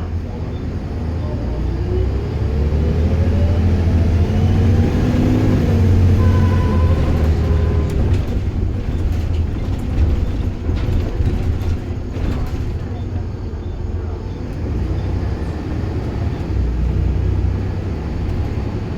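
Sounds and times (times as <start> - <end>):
bus engine rumbling and whining: 0.0 - 18.9.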